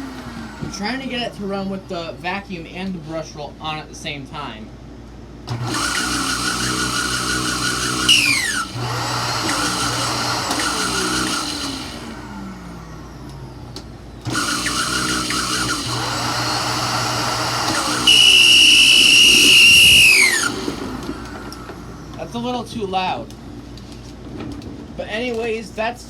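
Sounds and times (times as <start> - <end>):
vacuum cleaner motor whining: 0.0 - 1.8, 5.5 - 22.7.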